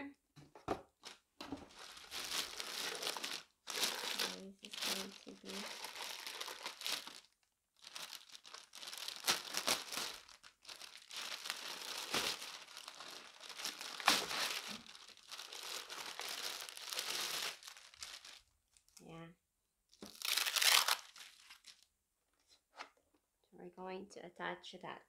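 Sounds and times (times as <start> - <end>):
packaging crinkling and rustling: 1.0 - 18.9, 19.9 - 21.8.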